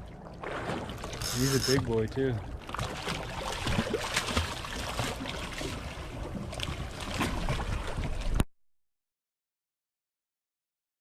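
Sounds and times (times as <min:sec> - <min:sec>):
water noise: 0:00.0 - 0:08.5.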